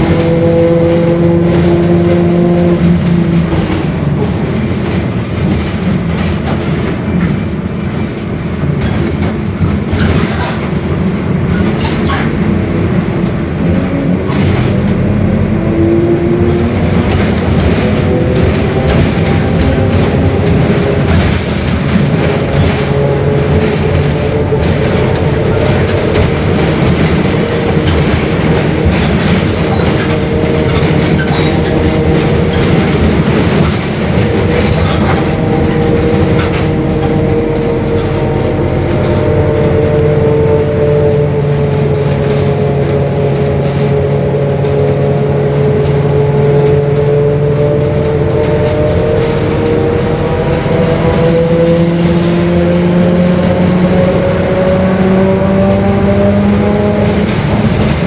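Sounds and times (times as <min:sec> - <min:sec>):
bus engine running: 0:00.0 - 0:58.0
body rattles: 0:08.1 - 0:40.2
droning gear whine: 0:46.1 - 0:57.2.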